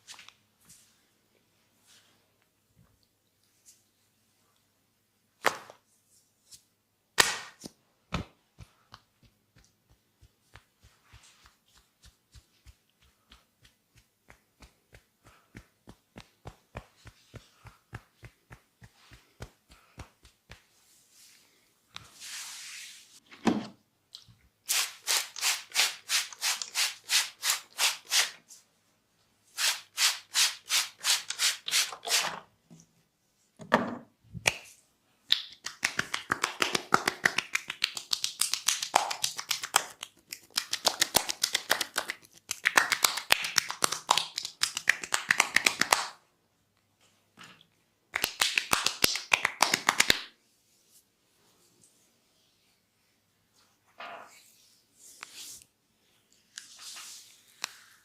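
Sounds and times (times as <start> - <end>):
hands tapping rhythmically: 8.2 - 20.8, 35.3 - 46.2, 48.1 - 50.3.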